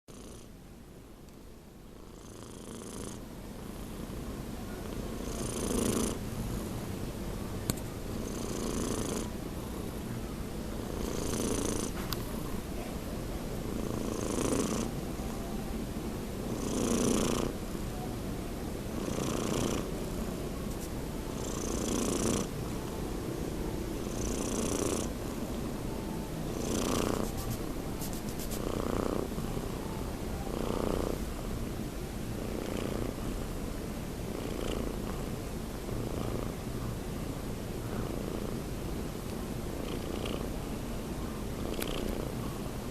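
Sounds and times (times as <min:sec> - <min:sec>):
cat snoring: 0:00.1 - 0:00.5, 0:02.0 - 0:04.2, 0:04.9 - 0:06.2, 0:08.2 - 0:10.0, 0:10.8 - 0:12.0, 0:13.7 - 0:15.0, 0:16.5 - 0:17.6, 0:19.0 - 0:20.0, 0:21.3 - 0:22.5, 0:24.0 - 0:25.4, 0:26.5 - 0:27.5, 0:28.6 - 0:31.2, 0:32.4 - 0:33.5, 0:34.3 - 0:35.3, 0:35.9 - 0:36.6, 0:39.8 - 0:40.5, 0:41.6 - 0:42.3.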